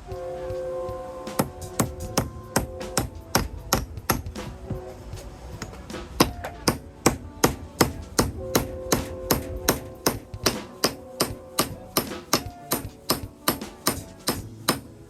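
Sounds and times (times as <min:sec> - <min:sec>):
sharp hammer blows on wood: 0:05.6 - 0:14.9.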